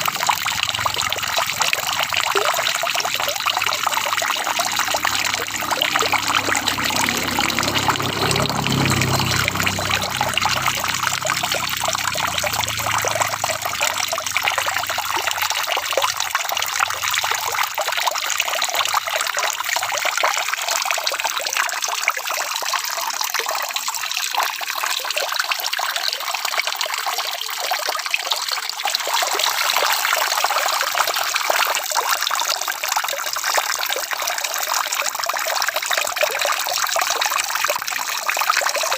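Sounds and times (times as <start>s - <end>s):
low rumble: 0.0s - 15.4s
water trickling: 0.0s - 38.9s.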